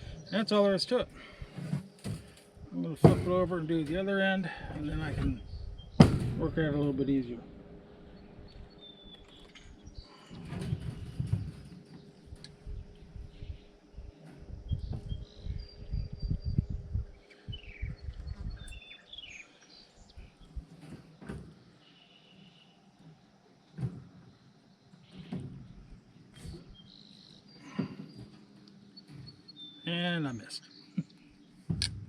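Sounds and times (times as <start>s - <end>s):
birds chirping: 0.0s - 32.0s
wire cage rattling: 4.7s - 13.4s.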